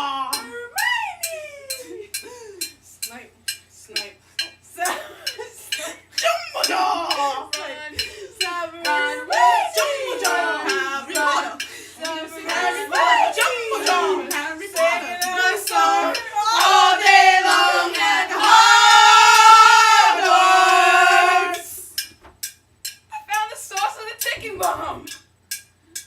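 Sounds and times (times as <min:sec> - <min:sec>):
sharp rhythmic clicks: 0:01.2 - 0:20.8, 0:21.5 - 0:26.0
high-pitched voices singing: 0:05.7 - 0:22.0.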